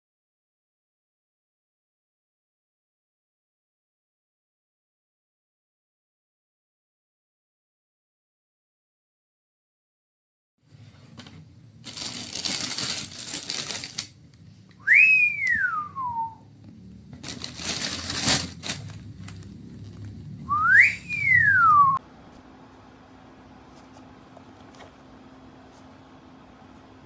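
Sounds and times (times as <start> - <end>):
crinkling: 11.0 - 14.4, 17.1 - 20.1, 22.0 - 27.0
rising and sliding whistles: 14.8 - 16.5, 20.4 - 22.0.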